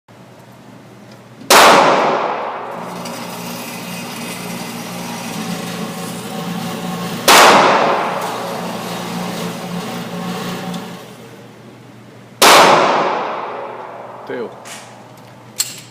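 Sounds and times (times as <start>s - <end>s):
gunshots with ringing reverberation: 1.5s - 2.7s, 7.3s - 8.1s, 12.4s - 14.2s.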